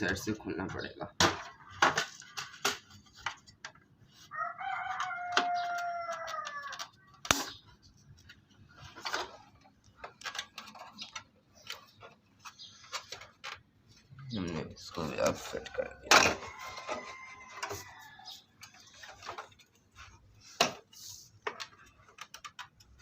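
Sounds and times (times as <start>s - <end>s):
rooster crowing: 4.3s - 6.9s, 16.4s - 18.4s.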